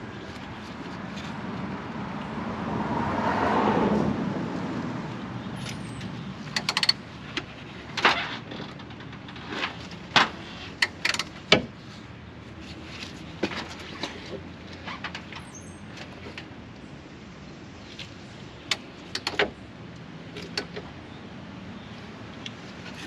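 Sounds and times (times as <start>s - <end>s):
vehicle passing: 1.0s - 6.4s.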